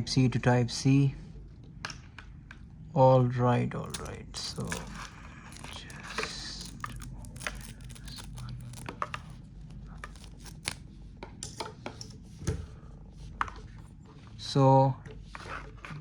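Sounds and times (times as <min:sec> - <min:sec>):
small sharp clicks and crackles: 0:03.8 - 0:10.8
plastic packaging crinkling: 0:03.8 - 0:10.9.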